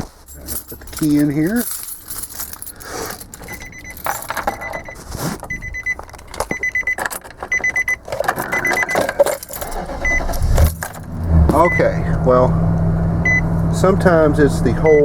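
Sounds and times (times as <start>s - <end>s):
keys jangling: 0.0s - 11.7s
key-in-ignition warning chime beeping: 3.4s - 10.6s, 11.6s - 12.2s, 13.2s - 13.5s, 14.8s - 15.0s.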